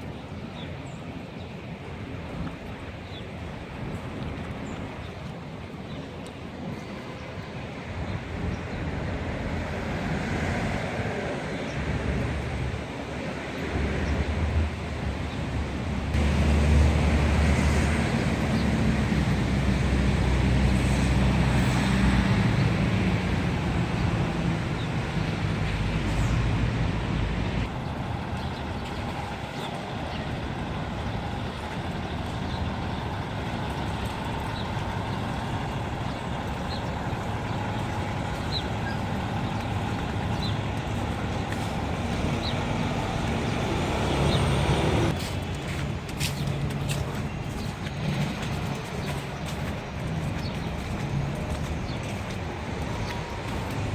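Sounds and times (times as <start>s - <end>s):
traffic hum: 0.0s - 53.9s
heavy vehicle engine running: 16.1s - 53.9s.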